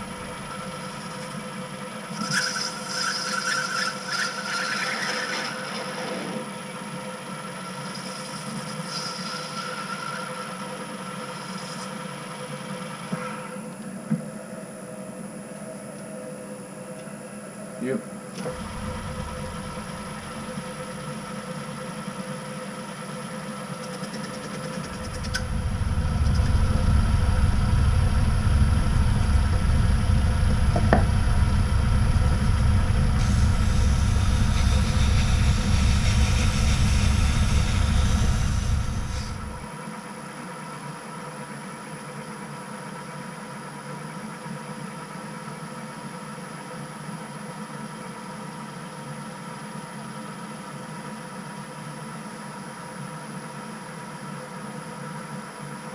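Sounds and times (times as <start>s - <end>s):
heavy low rumble: 0.0s - 0.7s, 18.5s - 21.0s, 24.9s - 39.7s
metal lathe whining: 0.0s - 13.7s, 18.4s - 39.7s
hiss: 7.7s - 12.1s, 32.2s - 39.7s.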